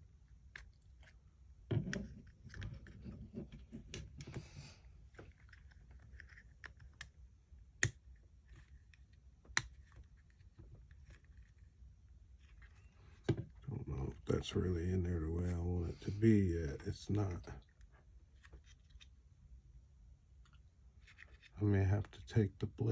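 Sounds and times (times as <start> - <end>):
plastic handling knocks and rattling: 1.6 - 4.4, 13.2 - 13.6.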